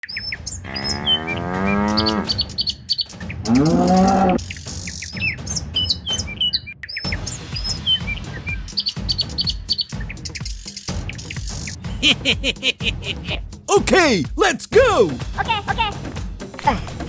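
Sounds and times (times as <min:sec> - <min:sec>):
cattle mooing: 0:00.7 - 0:02.3, 0:03.5 - 0:04.4.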